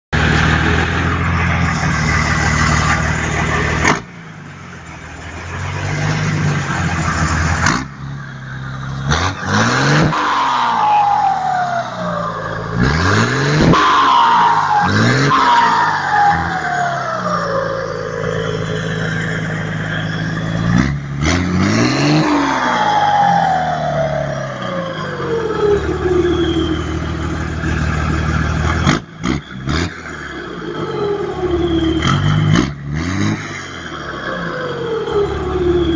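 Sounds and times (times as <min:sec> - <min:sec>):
diesel truck engine revving: 0:00.1 - 0:35.9
turbo whistle sliding down: 0:09.7 - 0:19.0, 0:22.0 - 0:27.4.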